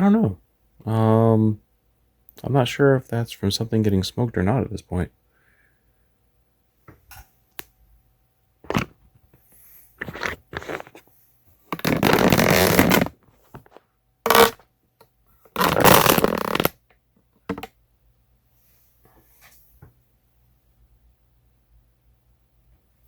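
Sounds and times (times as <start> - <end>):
handling noise rustling: 8.6 - 14.5, 15.5 - 16.6.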